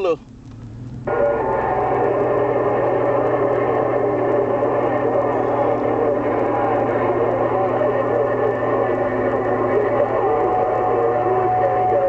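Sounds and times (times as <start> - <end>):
low hum: 0.2 - 12.0
warbling radio signals: 1.1 - 12.0.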